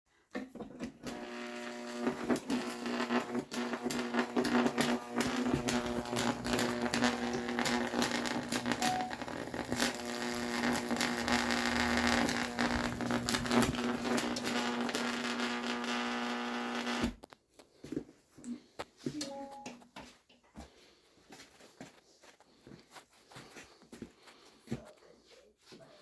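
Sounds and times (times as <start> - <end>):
microwave humming and crackling: 1.0 - 17.2.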